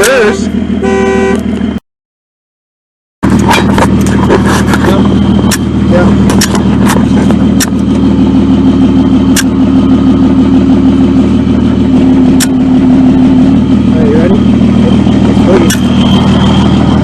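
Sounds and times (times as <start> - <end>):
truck engine running: 0.0 - 1.8, 3.2 - 17.0
sharp metallic clicks: 5.4 - 6.6, 7.5 - 8.0, 9.3 - 9.6, 15.6 - 16.0.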